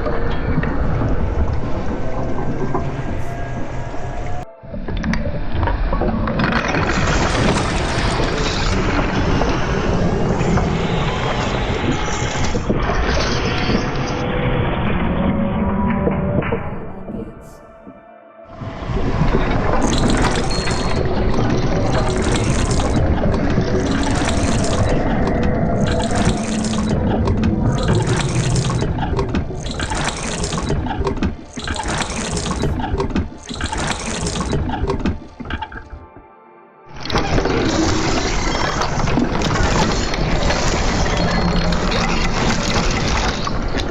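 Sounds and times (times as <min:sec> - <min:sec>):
mechanical churning rumble: 0:00.0 - 0:04.4, 0:18.6 - 0:36.1
machine clicks and clanks: 0:04.9 - 0:14.2, 0:19.0 - 0:36.0, 0:37.0 - 0:43.9.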